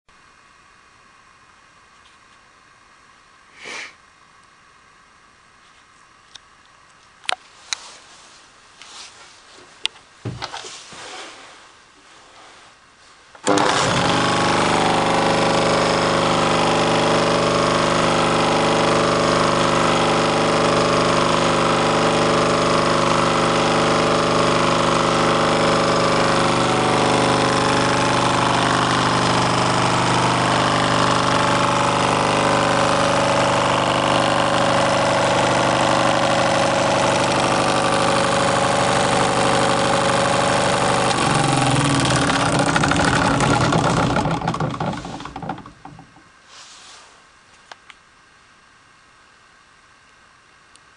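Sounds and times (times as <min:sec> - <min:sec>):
handling knocks: 0:10.2 - 0:10.7, 0:42.0 - 0:46.3
chainsaw engine running: 0:13.4 - 0:46.2.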